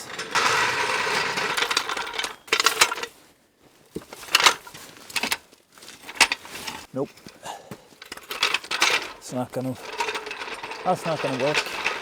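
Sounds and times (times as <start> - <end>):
sharp metallic clanks: 0.0 - 3.1, 6.0 - 12.0
metal tools clinking: 0.0 - 3.2, 4.0 - 12.0.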